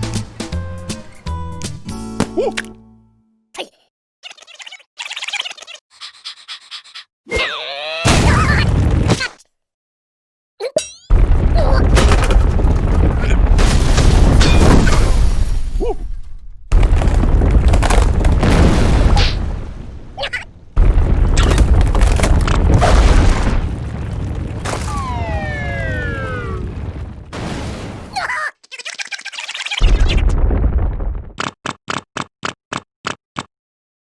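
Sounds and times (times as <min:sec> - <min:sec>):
booming rumbling crashes: 0:11.1 - 0:28.1, 0:29.9 - 0:31.4.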